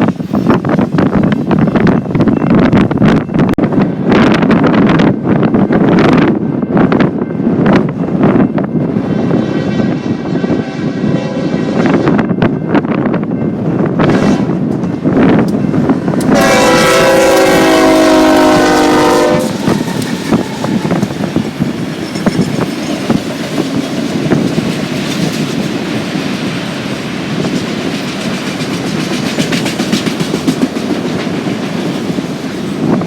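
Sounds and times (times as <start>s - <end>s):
locomotive air horn: 9.5s - 12.2s, 16.3s - 21.0s
train wheels clicking on rails: 12.4s - 33.0s.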